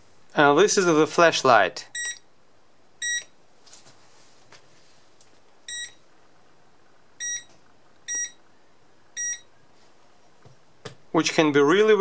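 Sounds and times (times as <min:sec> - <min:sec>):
multimeter short beeps: 0:02.0 - 0:02.2, 0:03.0 - 0:03.3, 0:05.7 - 0:06.0, 0:07.2 - 0:07.5, 0:08.1 - 0:08.4, 0:09.2 - 0:09.5.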